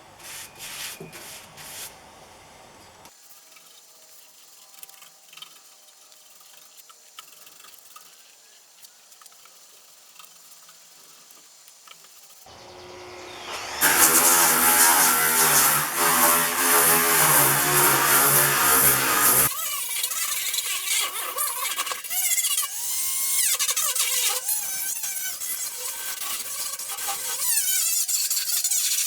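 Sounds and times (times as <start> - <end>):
power tool motor running: 12.5 - 19.5.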